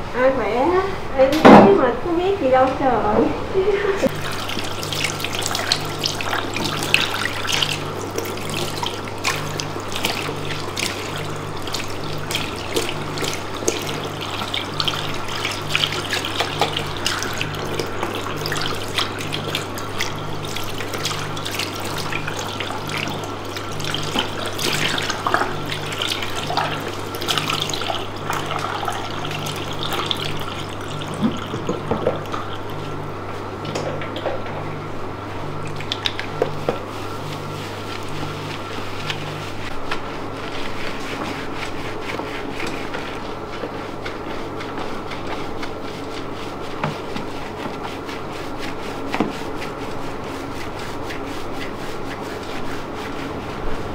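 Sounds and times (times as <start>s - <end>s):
steady low hum: 0.0s - 53.9s
tap water splashing in a basin: 4.1s - 32.8s, 35.6s - 39.3s, 46.7s - 47.8s, 49.0s - 49.7s.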